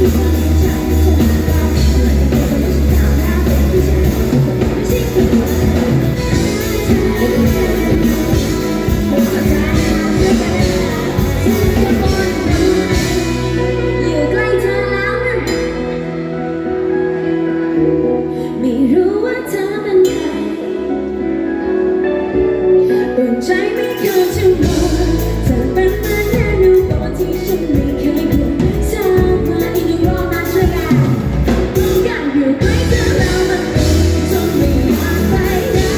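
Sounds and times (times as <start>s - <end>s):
female singer: 0.0s - 35.9s
pop-rock band playing: 0.0s - 35.9s.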